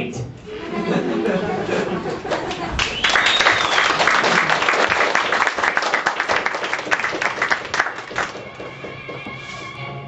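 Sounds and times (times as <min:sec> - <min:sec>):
audience applauding: 0:01.4 - 0:08.9.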